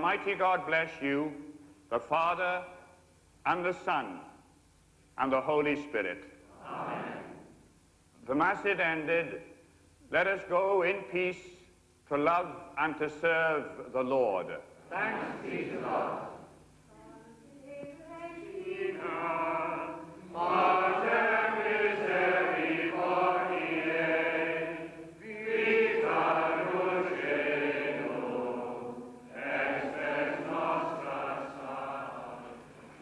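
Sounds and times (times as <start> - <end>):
slow sacred singing: 14.7 - 33.0.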